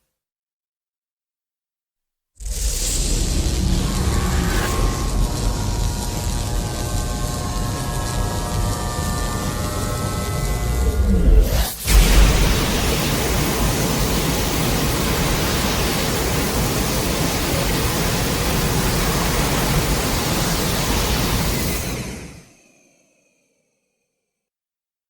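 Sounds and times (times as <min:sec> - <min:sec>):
loud steady rushing noise: 0:03.2 - 0:09.4.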